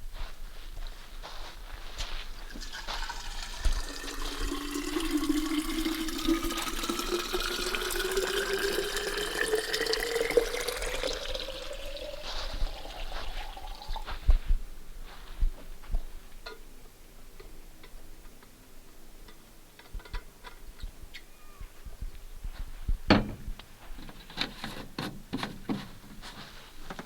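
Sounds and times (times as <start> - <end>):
water pouring into a container: 2.4 - 14.2.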